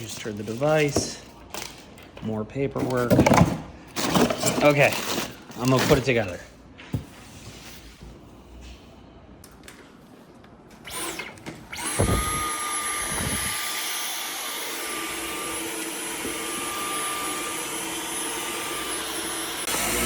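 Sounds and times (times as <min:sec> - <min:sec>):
cordless vacuum running: 0:10.8 - 0:20.0.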